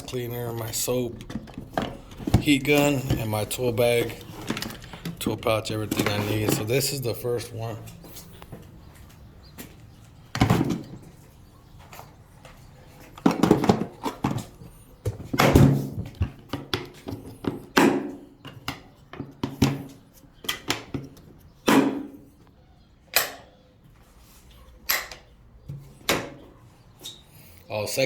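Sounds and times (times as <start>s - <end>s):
plastic tool boxes knocking: 0.6s - 6.8s, 13.2s - 14.5s.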